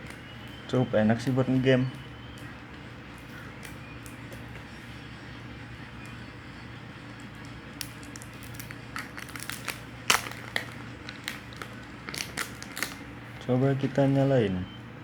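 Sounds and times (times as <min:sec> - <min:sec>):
steady low hum: 0:00.0 - 0:15.0
plastic packaging crinkling: 0:07.2 - 0:14.2.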